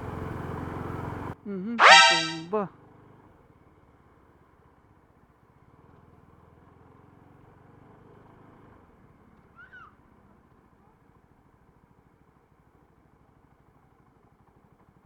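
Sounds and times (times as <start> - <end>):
high chirp: 1.8 - 2.4.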